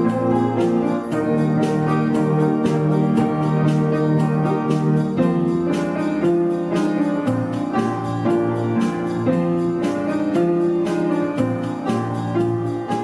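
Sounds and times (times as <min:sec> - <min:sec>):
keyboard background music: 0:00.0 - 0:13.0.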